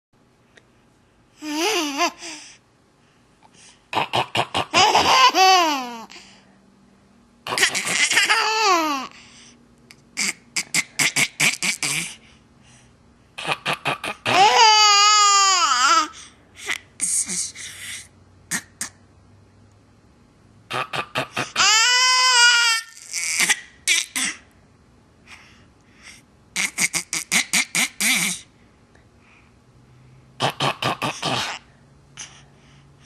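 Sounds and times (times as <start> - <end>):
baby laughing: 1.4 - 2.4, 4.0 - 6.2, 7.5 - 9.1, 10.2 - 12.2, 13.4 - 17.6, 26.6 - 28.4.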